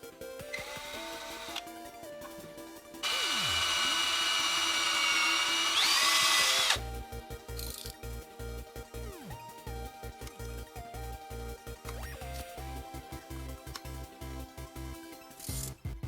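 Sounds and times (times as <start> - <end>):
background music: 0.0 - 16.0
electric power tool motor: 0.5 - 1.6, 3.0 - 6.8.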